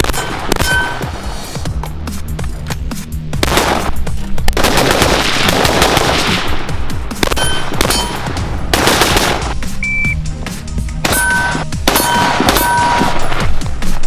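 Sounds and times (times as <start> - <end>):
rapid gunshots: 0.0 - 1.7, 3.3 - 9.8, 11.0 - 14.0
background music: 0.0 - 14.0.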